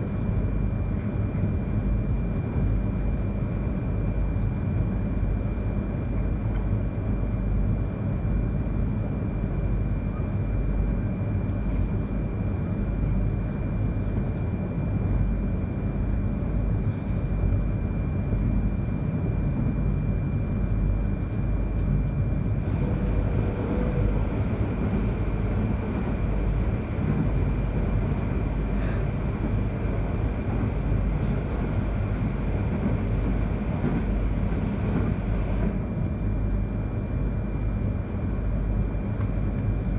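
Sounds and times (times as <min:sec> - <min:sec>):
train wheels rumbling on rail: 0:11.4 - 0:39.9.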